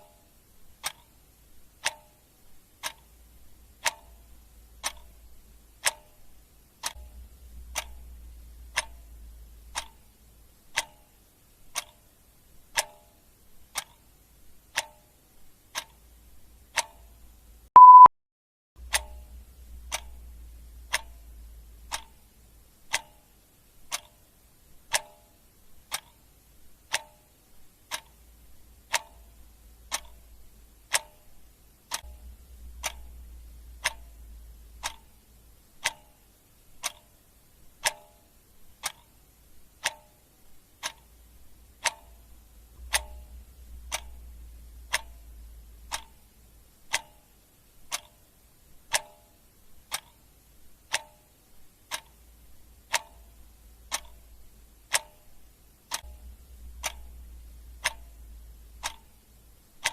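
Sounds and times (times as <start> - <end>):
clock ticking: 0.0 - 18.1, 18.8 - 59.9
short loud beep: 17.8 - 18.1.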